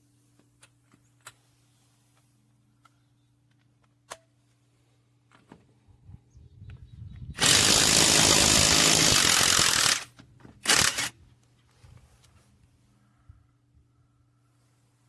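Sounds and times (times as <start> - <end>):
impact wrench bursts: 7.4 - 11.1.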